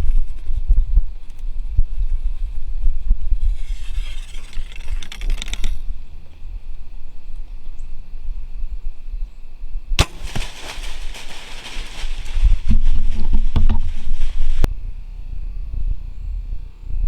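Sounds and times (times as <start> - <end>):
steady low rumble: 9.9 - 17.0
bow string crack: 10.0 - 14.7
rustling: 10.0 - 14.7.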